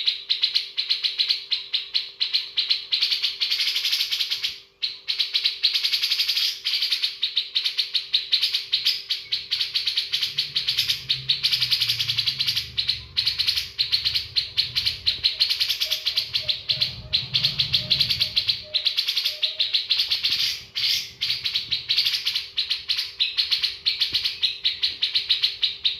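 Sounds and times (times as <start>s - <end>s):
bulbul singing fast chattering notes: 7.4s - 25.9s.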